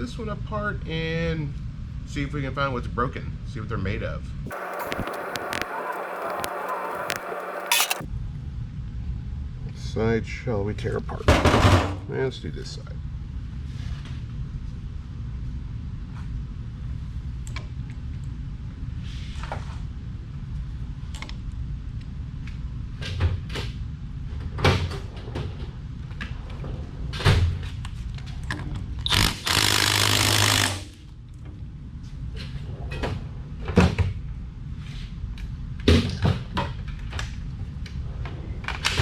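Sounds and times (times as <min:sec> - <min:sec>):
power tool burst: 0:04.5 - 0:08.0, 0:29.1 - 0:31.0.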